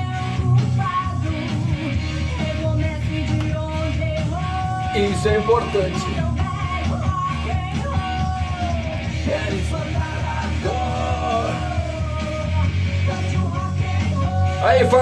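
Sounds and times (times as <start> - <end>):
rock music: 0.0 - 15.0
man shouting vocals: 4.8 - 6.3, 9.2 - 12.0, 14.5 - 15.0.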